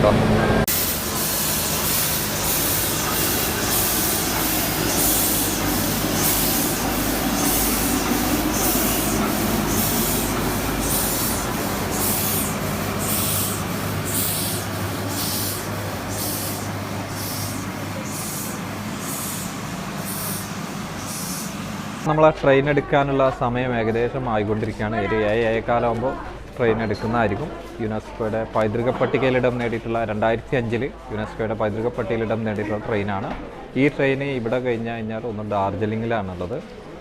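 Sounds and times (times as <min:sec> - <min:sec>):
steady low hum: 0:00.0 - 0:22.1
steam hissing in short puffs: 0:00.7 - 0:22.1.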